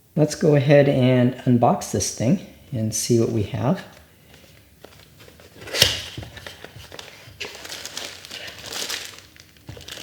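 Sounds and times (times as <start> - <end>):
cardboard rustling and scraping: 4.8 - 10.0.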